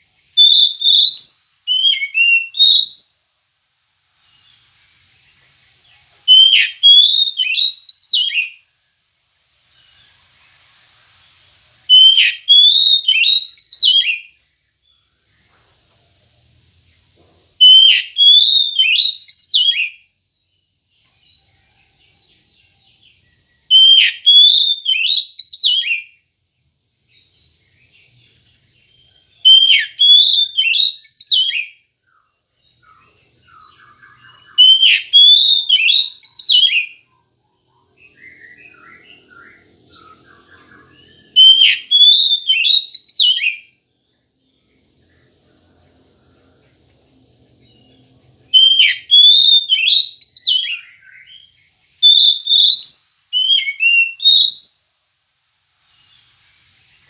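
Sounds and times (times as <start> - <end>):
soft bird twittering: 0.0 - 3.3, 9.6 - 55.0
bird singing whistled phrases: 0.2 - 3.3, 5.4 - 8.7, 11.9 - 15.0, 17.6 - 20.1, 23.6 - 26.2, 27.4 - 43.8, 47.6 - 54.9.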